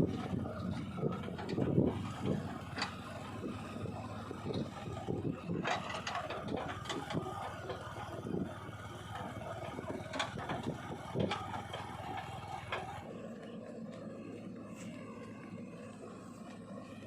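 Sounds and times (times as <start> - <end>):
diesel engine running: 0.0 - 17.0
metallic clanks and scrapes: 5.5 - 7.8.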